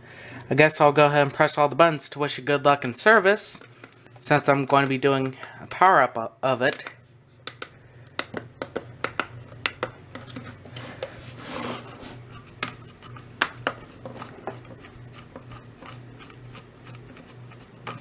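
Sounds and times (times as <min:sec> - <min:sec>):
handling rubs: 0:10.5 - 0:12.3, 0:13.9 - 0:18.0.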